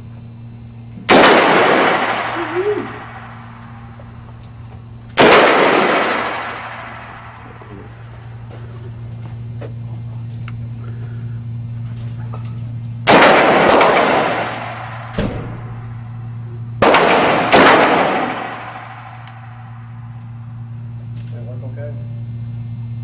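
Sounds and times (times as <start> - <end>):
steady low hum: 0.0 - 23.0
gunshots with long echo: 1.1 - 3.6, 5.2 - 7.6, 13.1 - 15.8, 16.8 - 20.0.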